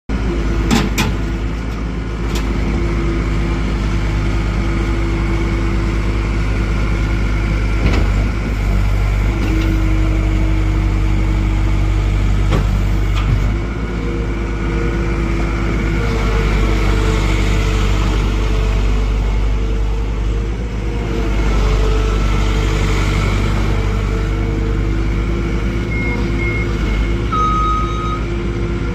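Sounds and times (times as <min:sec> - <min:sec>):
diesel engine running: 0:00.1 - 0:28.9
short high beeps: 0:27.3 - 0:28.3.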